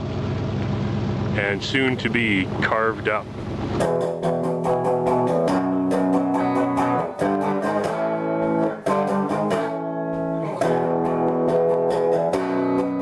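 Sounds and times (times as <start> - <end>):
strummed guitar instrumental: 3.8 - 13.0.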